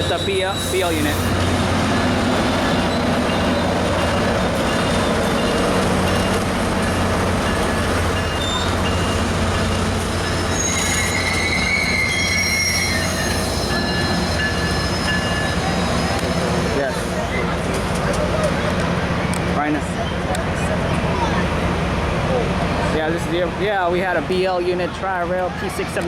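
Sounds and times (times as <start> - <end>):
high wheel squeals: 0.0 - 1.4, 8.2 - 9.3, 10.2 - 16.6
train wheels rumbling on rail: 0.0 - 26.0.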